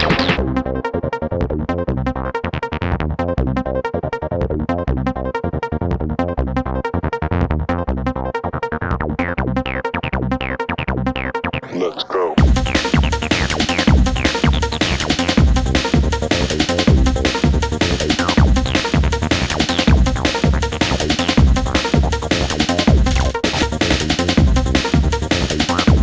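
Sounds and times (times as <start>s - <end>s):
electronic music with fast beat: 0.0s - 1.0s, 11.2s - 26.0s.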